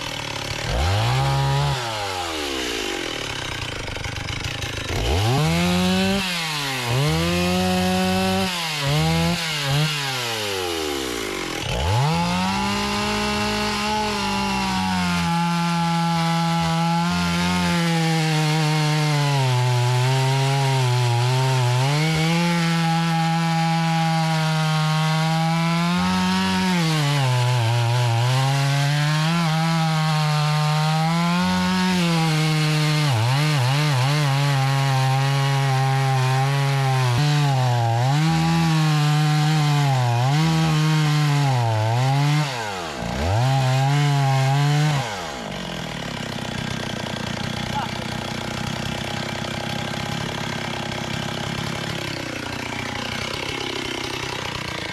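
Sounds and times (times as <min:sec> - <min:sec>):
chainsaw revving and cutting wood: 0:00.0 - 0:54.9.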